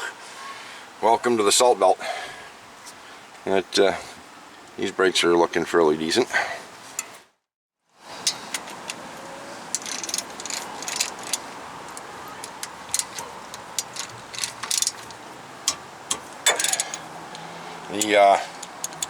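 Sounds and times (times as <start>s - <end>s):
ratchet wrench clicking: 9.7s - 19.0s.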